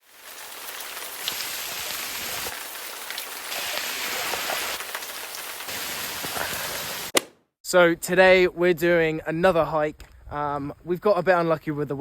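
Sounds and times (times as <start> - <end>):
falling water patter and hiss: 0.0 - 7.1.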